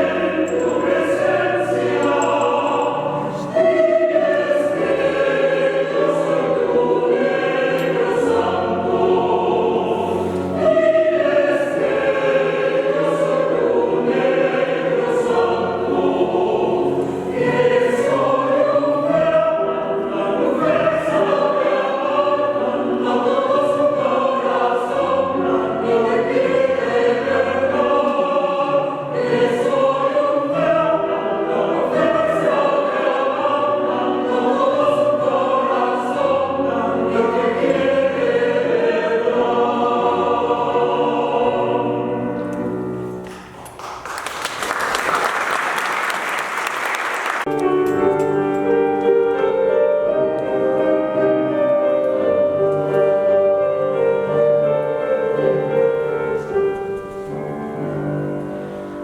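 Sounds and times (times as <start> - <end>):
choir singing: 0.0 - 59.0.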